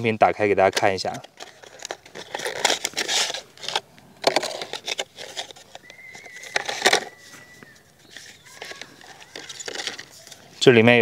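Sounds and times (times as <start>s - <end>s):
packaging rustling and scraping: 0.4s - 11.0s.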